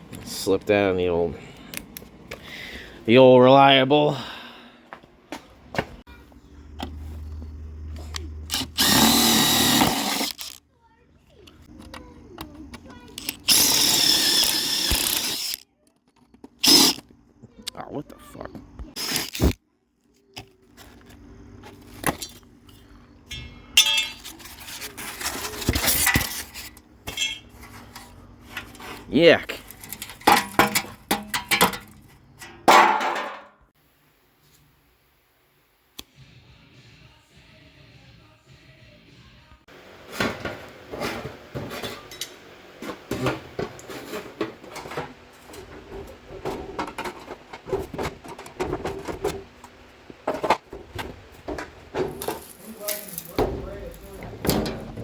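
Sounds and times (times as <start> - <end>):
power drill whining: 8.5 - 10.6, 13.2 - 15.6, 16.6 - 17.0
metal tools clinking: 23.3 - 28.0, 29.5 - 33.4.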